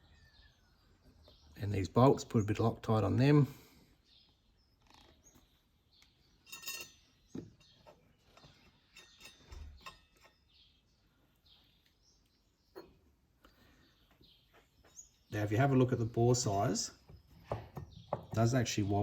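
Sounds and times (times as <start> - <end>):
metallic clinks of bolts: 6.4 - 7.7.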